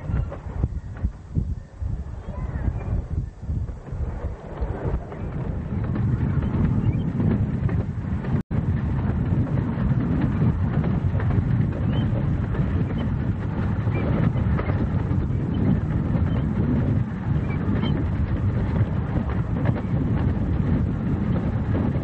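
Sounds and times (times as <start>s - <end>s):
miniature train rumbling: 0.0s - 22.0s.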